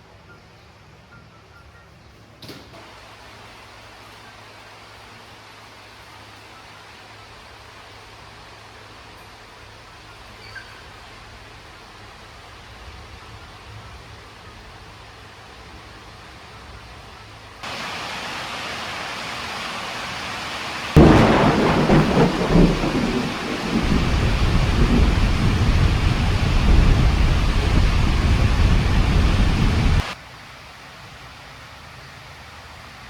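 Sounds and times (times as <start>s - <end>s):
heavy rain hissing: 11.5s - 30.2s
thunderclap rolling: 20.8s - 30.2s.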